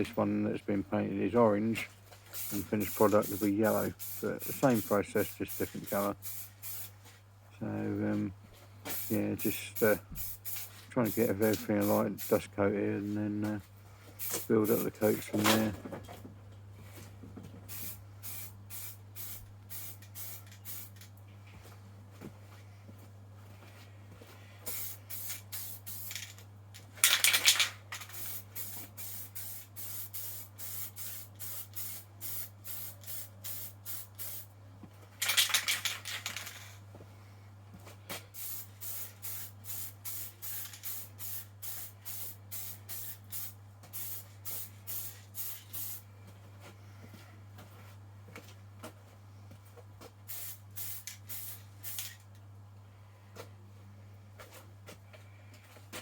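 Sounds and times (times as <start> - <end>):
spray paint can hissing: 2.4 - 7.0, 8.9 - 12.5, 14.2 - 14.9, 17.7 - 21.0, 24.7 - 26.4, 27.0 - 34.5, 38.4 - 46.0, 50.3 - 52.2.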